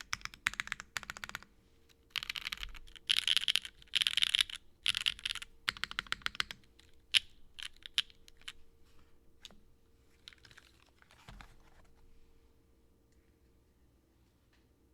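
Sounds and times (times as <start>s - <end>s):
mechanical keyboard typing: 0.0s - 1.5s, 2.1s - 8.6s.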